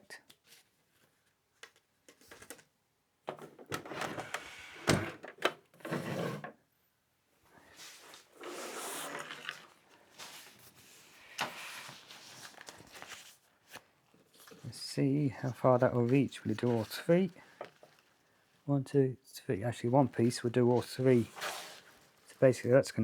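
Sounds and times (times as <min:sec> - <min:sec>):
fabric rustling: 0:07.7 - 0:14.8, 0:15.4 - 0:18.7, 0:19.9 - 0:22.7.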